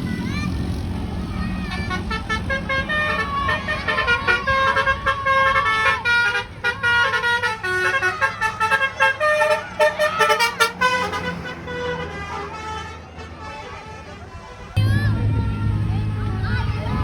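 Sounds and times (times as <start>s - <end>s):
tuned air horns playing a tune: 1.7s - 15.8s
low rumble: 14.8s - 17.0s.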